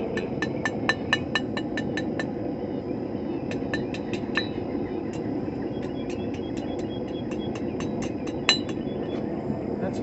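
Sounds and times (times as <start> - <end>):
hammer striking hot steel on anvil: 0.0 - 2.3, 3.5 - 5.2, 5.8 - 8.8.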